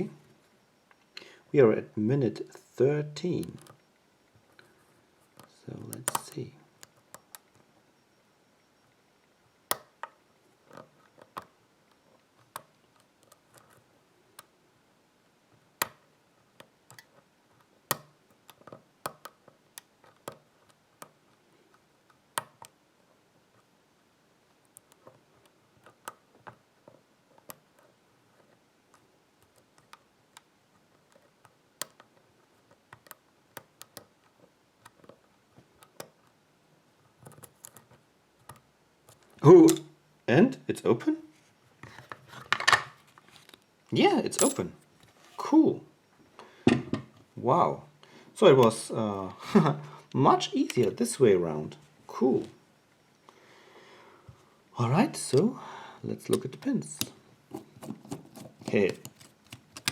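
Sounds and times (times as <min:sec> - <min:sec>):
lock pick clicking in lock: 0:57.8 - 0:59.9.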